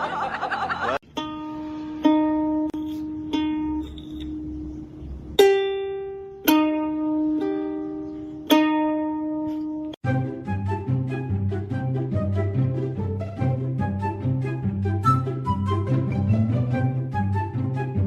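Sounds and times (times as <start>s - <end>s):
plucked string music: 0.9s - 18.0s
busy tune with quick notes: 5.4s - 18.0s.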